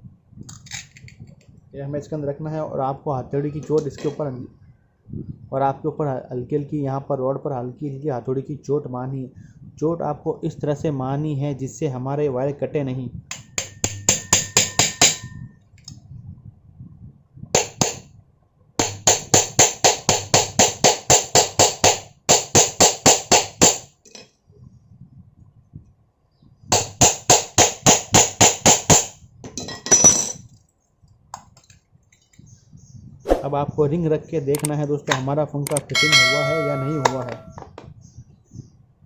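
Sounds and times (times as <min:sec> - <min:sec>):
hammer tapping on metal: 0:13.3 - 0:15.4, 0:18.8 - 0:23.8, 0:35.9 - 0:37.6.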